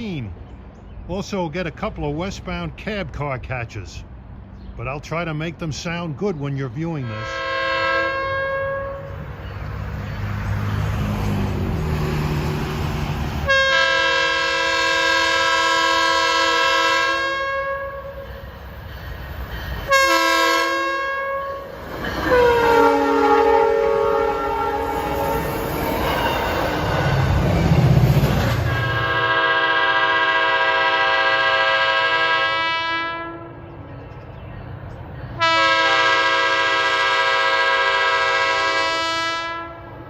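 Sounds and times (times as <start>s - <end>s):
train horn blasts: 7.0s - 9.4s, 13.4s - 18.4s, 19.8s - 27.3s, 28.6s - 33.6s, 35.4s - 40.0s
train rumble and clatter: 9.0s - 30.1s.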